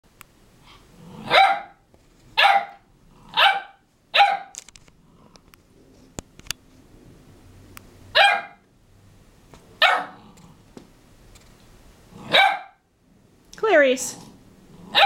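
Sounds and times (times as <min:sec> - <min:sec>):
puppy barking: 0:01.2 - 0:01.8, 0:02.4 - 0:04.6, 0:08.1 - 0:08.6, 0:09.8 - 0:10.2, 0:12.2 - 0:12.8.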